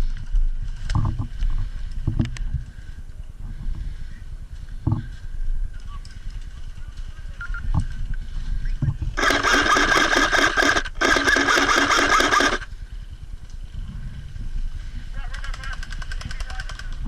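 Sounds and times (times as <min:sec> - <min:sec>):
airsoft gun full-auto bursts: 0:09.2 - 0:12.7.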